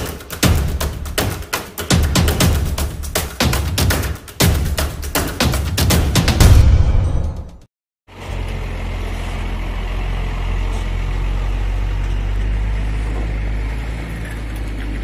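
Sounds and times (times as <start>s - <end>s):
diesel truck engine droning: 8.1s - 15.0s.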